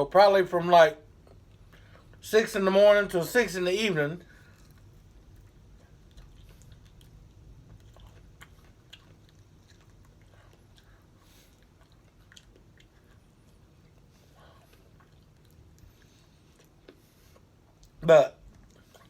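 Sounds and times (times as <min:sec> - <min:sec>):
person chewing: 0:04.2 - 0:19.0.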